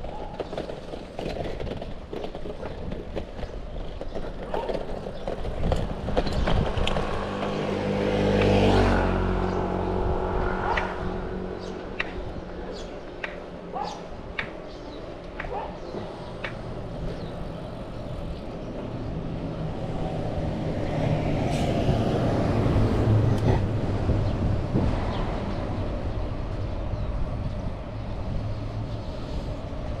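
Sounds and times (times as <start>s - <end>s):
road and wind noise: 0.0s - 30.0s
vehicle engine passing by: 6.6s - 12.8s.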